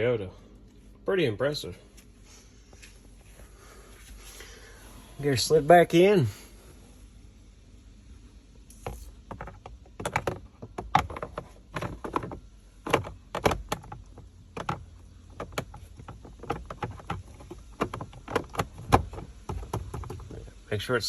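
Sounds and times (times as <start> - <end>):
air filter scraping and knocking: 8.8 - 20.5.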